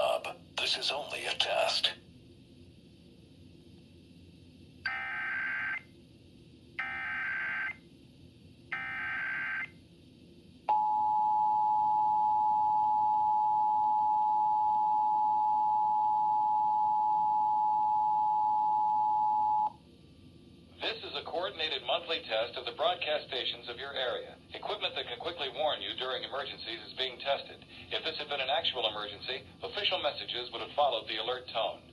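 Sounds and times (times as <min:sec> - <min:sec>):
steady two-tone alert signal: 0:04.9 - 0:05.8, 0:06.8 - 0:07.8, 0:08.7 - 0:09.7.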